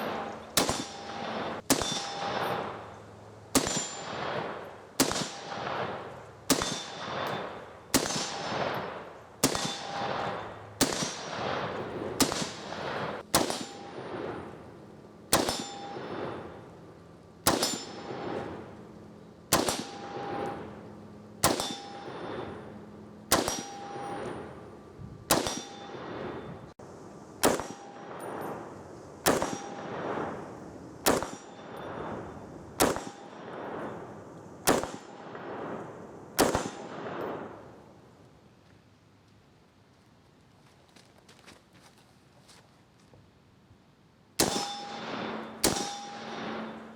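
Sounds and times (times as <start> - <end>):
steel target ringing: 0.0 - 2.9, 3.6 - 11.6, 13.4 - 14.5, 15.3 - 16.8, 17.5 - 18.7, 19.6 - 24.7, 25.3 - 26.7, 29.3 - 30.5, 31.1 - 33.7, 44.4 - 46.9
rifle shots echoing: 0.0 - 16.8, 17.4 - 24.7, 25.3 - 26.5, 27.4 - 38.0, 44.4 - 46.9.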